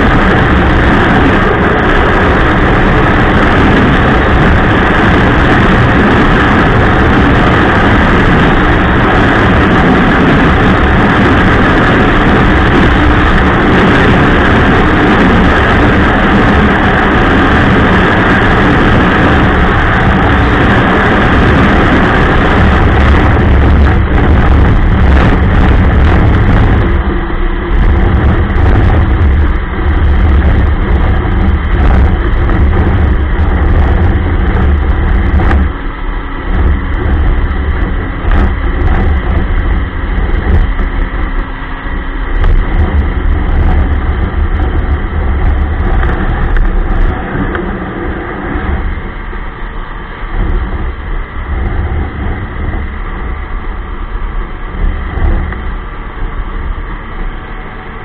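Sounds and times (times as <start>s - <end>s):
snowmobile engine running: 0.0s - 58.0s.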